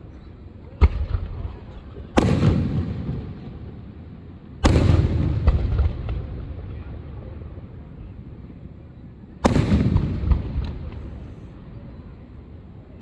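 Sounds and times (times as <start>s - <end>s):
fireworks booming: 0.8s - 3.9s, 4.6s - 6.8s, 9.4s - 11.5s.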